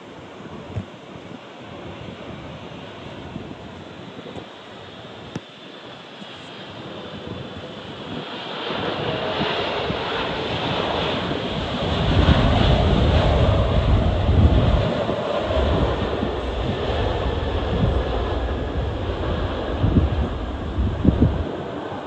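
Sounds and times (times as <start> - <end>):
jet engines passing: 0.0 - 22.0
wind buffeting microphone: 0.3 - 5.4, 6.7 - 22.0
deep rumble: 11.4 - 22.0.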